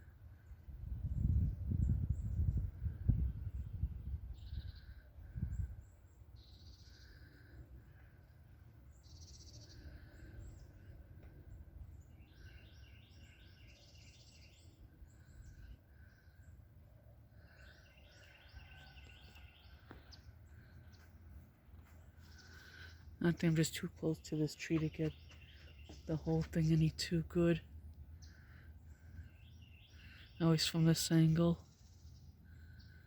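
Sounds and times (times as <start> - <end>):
small birds chirping: 1.2 - 33.0
low steady rumble: 20.0 - 30.4.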